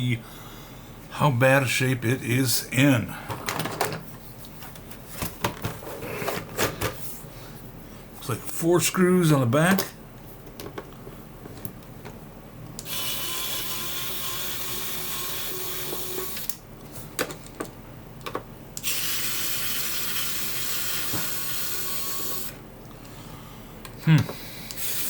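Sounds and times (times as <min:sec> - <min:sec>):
electric screwdriver running: 0:12.9 - 0:16.5, 0:18.8 - 0:22.6, 0:24.7 - 0:25.0.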